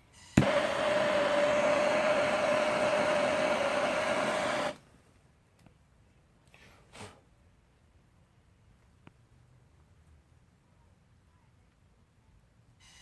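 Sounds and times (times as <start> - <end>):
propane torch hissing: 0.0 - 4.8
torch ignition click: 0.4 - 4.8.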